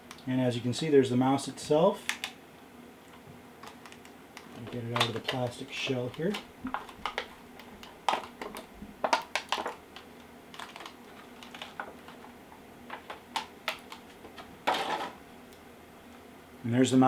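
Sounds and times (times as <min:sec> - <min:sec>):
plastic packaging clicking and crackling: 0:03.6 - 0:15.2.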